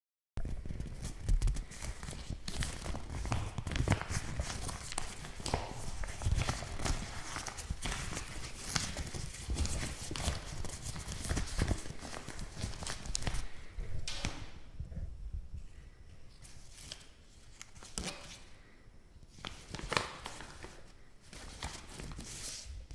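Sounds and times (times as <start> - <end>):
paper crinkling: 0.4 - 14.2, 16.4 - 18.5, 19.3 - 22.7.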